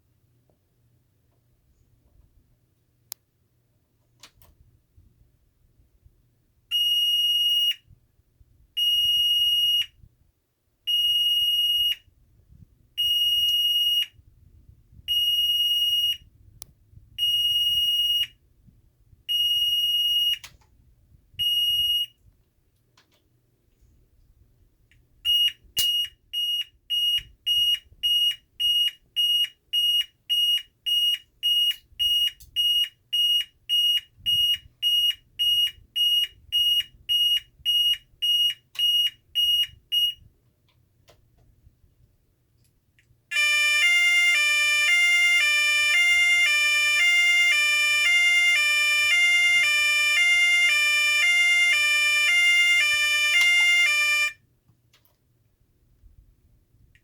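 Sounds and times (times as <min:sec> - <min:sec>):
two-pitch siren warble: 0:43.4 - 0:54.4.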